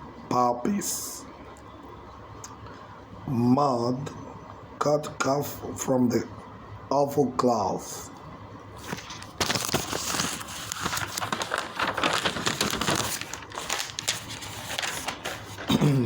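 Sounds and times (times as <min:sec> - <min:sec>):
crinkling rustling noise: 0:08.8 - 0:16.0.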